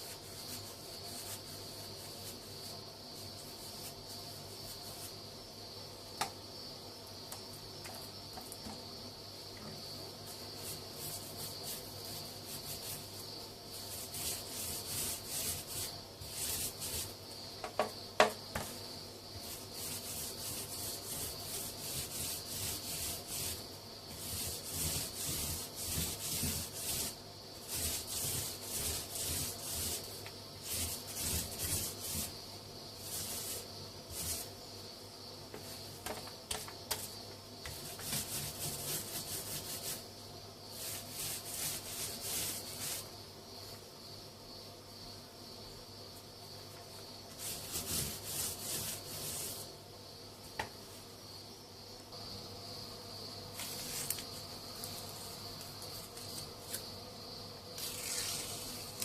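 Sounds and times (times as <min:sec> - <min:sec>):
sandpaper rubbing on plaster: 0:00.0 - 0:05.2, 0:10.2 - 0:17.2, 0:19.3 - 0:32.4, 0:33.0 - 0:34.6, 0:36.9 - 0:40.1, 0:40.7 - 0:43.2, 0:47.3 - 0:49.7, 0:57.8 - 0:59.0.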